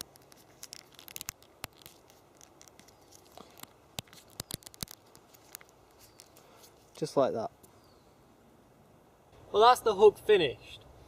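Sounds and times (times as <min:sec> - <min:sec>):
root binding crackling and clicking: 0:00.0 - 0:07.0.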